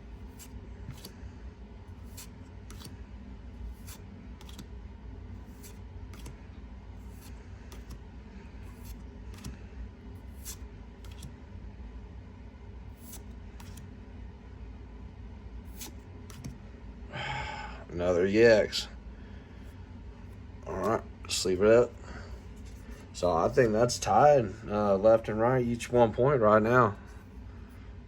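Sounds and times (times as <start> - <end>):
low steady hum: 0.0 - 28.0
cards flipped swishing: 0.2 - 1.2, 2.0 - 3.0, 3.6 - 4.7, 5.4 - 6.4, 7.0 - 8.0, 8.6 - 9.6, 10.2 - 11.4, 12.9 - 13.9, 15.7 - 16.6.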